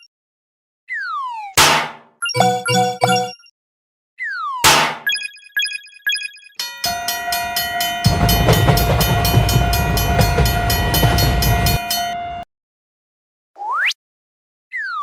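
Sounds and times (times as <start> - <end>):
crossing warning bell clanging: 6.6 - 12.2
train passing rumble: 7.2 - 12.2.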